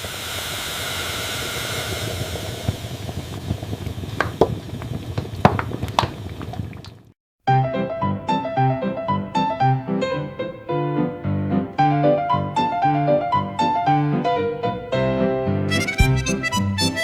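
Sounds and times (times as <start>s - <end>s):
piano music: 7.5s - 17.0s.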